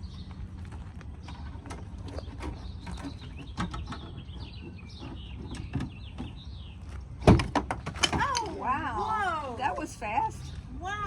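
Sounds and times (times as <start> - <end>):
small birds chirping: 0.0 - 7.3.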